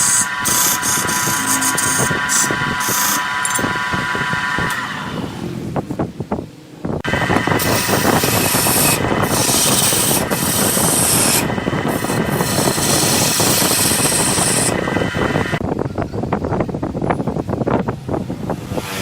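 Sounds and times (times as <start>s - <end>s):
wood lathe tool rasping: 0.0s - 5.4s, 7.1s - 15.6s.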